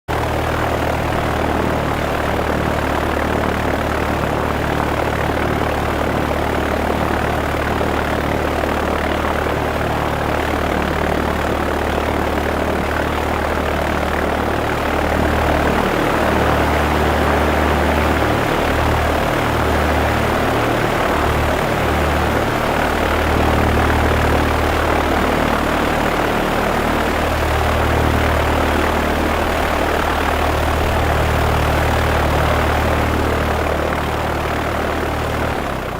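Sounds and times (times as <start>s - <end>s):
low hum: 0.1s - 35.9s
propeller aircraft engine drone: 0.1s - 35.9s.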